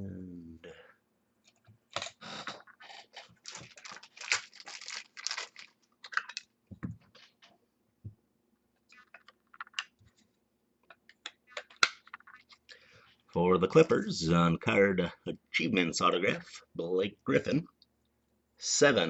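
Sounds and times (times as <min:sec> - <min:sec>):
cards rustling and scraping: 0:08.9 - 0:12.8.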